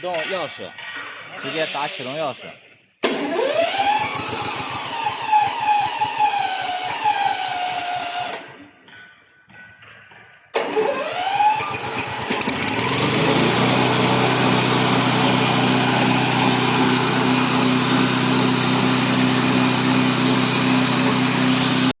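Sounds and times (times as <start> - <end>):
lawn mower engine running: 3.0 - 8.6, 10.6 - 22.0.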